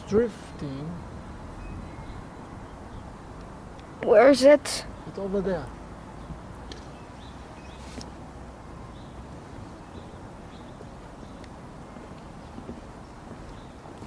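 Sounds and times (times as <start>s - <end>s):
wind rumble on microphone: 6.1s - 14.0s.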